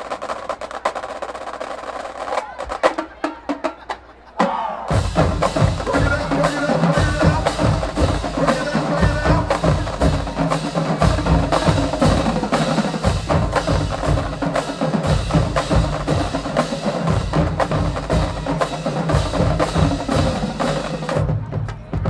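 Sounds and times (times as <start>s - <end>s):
snare drums: 0.0s - 22.0s
pitched bass drums: 4.9s - 22.0s.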